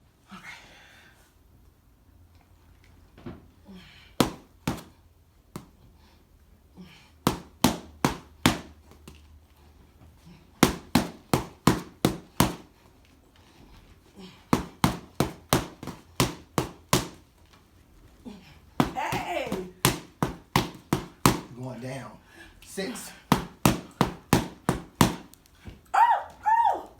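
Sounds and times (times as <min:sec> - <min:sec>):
sharp workout thuds: 0:04.2 - 0:05.7, 0:07.2 - 0:08.8, 0:10.6 - 0:12.7, 0:14.5 - 0:17.2, 0:18.8 - 0:21.6, 0:22.8 - 0:25.8.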